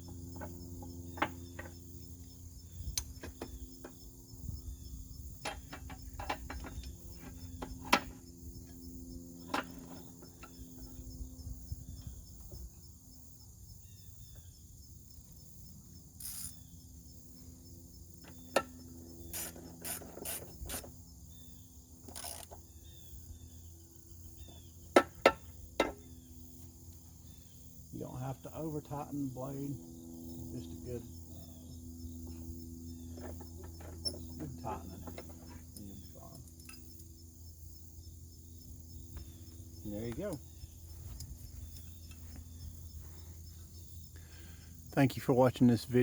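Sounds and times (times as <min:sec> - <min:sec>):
crickets chirping: 0:00.0 - 0:46.0
ratchet clicking: 0:16.2 - 0:16.6, 0:19.3 - 0:20.9, 0:22.0 - 0:22.6.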